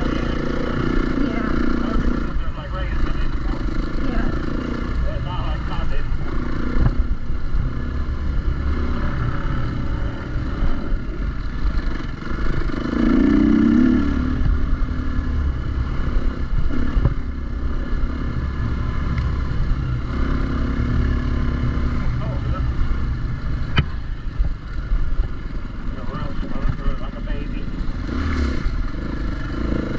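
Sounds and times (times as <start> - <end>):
dirt bike engine revving: 0.0 - 29.9.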